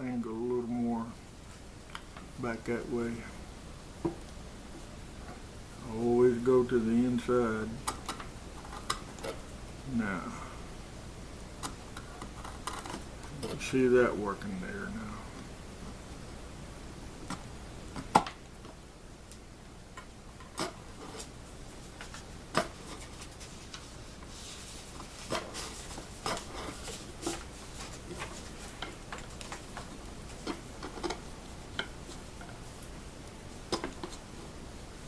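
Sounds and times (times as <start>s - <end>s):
chisel scraping wood: 25.2s - 27.5s.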